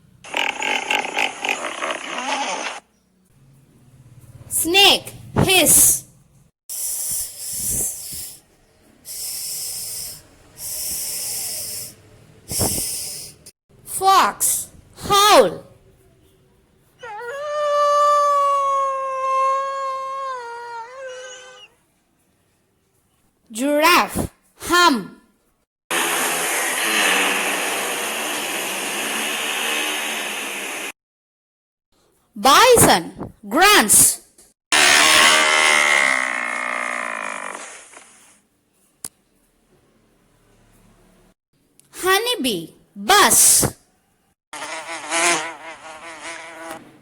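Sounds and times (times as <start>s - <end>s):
snake hissing: 6.7s - 8.4s, 9.1s - 13.4s.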